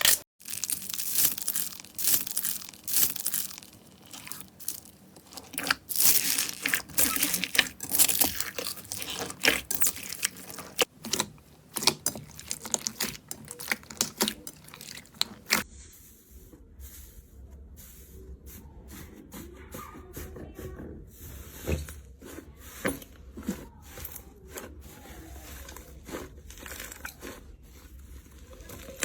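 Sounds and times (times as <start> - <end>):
slime crackling and popping: 0.4 - 15.6.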